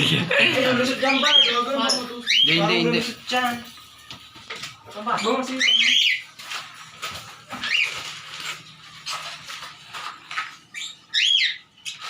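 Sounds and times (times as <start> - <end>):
parrot screeching: 1.0 - 2.8, 5.2 - 6.4, 7.5 - 8.6, 10.7 - 12.0
rustling: 6.1 - 10.8.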